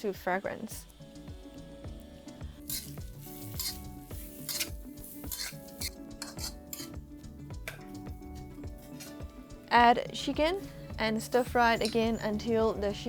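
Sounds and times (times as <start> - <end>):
paste sizzling in hot oil: 0.0 - 7.4
utensil scraping a pan: 2.6 - 7.0, 8.8 - 9.3.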